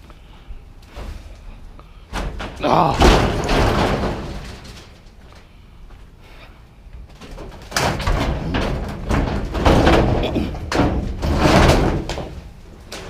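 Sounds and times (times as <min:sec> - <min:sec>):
knocks: 0:02.1 - 0:04.9, 0:07.4 - 0:12.5.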